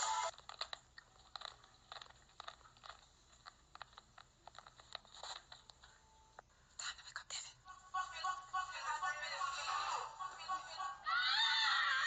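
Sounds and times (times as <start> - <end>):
faint clicks and crunches: 0.3 - 6.0.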